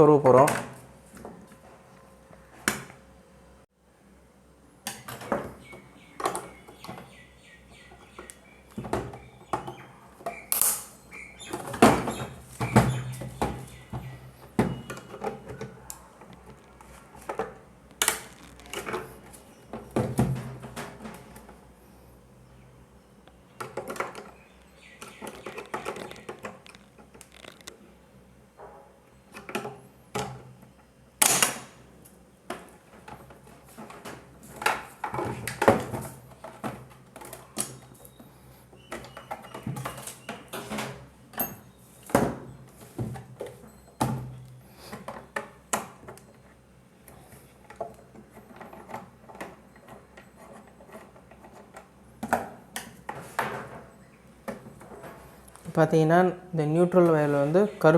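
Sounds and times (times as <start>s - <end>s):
plastic box and tools clattering: 25.1s - 27.7s.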